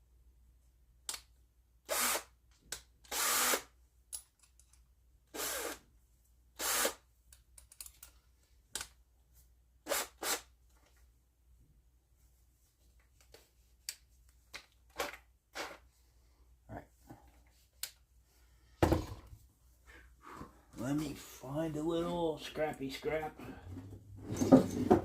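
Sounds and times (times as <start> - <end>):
power drill boring into wood: 1.9 - 2.3, 3.1 - 3.7, 5.3 - 5.8, 6.6 - 7.0.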